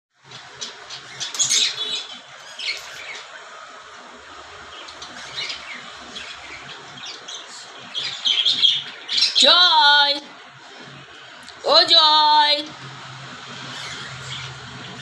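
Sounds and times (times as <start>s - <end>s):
cockatiels chirping and squawking: 0.3s - 3.4s, 4.7s - 9.4s, 13.5s - 15.0s.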